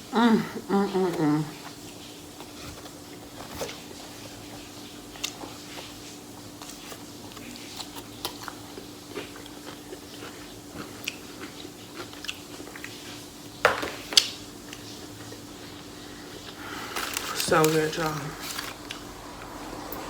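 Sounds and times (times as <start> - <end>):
chewing food: 0.9 - 13.6.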